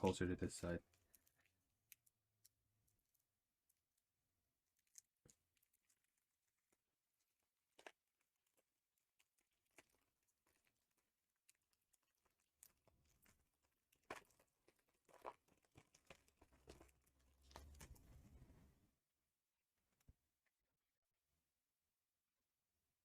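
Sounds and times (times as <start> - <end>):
small clicks and rustles: 0.8 - 18.8.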